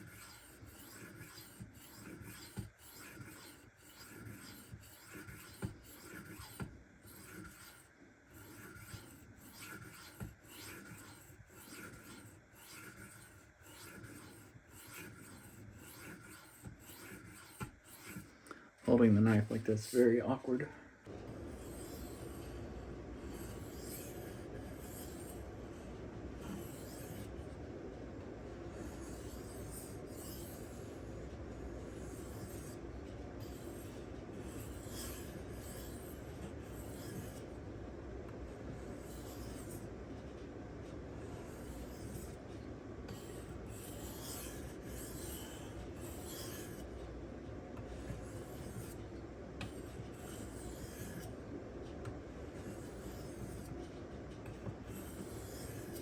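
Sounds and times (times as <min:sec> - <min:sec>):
knife scraping on sharpening stone: 0:00.0 - 0:07.8, 0:08.4 - 0:18.3, 0:21.5 - 0:22.5, 0:23.2 - 0:25.4, 0:28.8 - 0:31.0, 0:33.4 - 0:37.4, 0:39.0 - 0:39.8, 0:43.1 - 0:46.9, 0:49.6 - 0:51.3, 0:52.6 - 0:53.7, 0:54.9 - 0:56.0.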